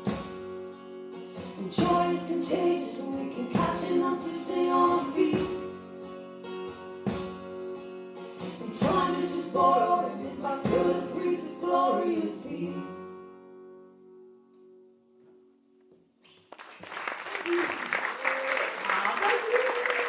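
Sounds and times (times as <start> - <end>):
strummed acoustic guitar: 0.0 - 15.2
people singing in harmony: 1.6 - 5.8, 8.4 - 13.2.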